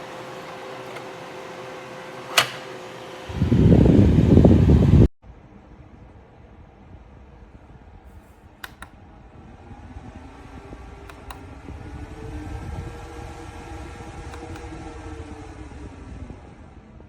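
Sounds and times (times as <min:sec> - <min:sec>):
electric fan motor hum: 0:00.0 - 0:05.1, 0:06.9 - 0:17.0
sharp clicks: 0:08.6 - 0:09.0, 0:11.0 - 0:11.5, 0:14.4 - 0:14.7.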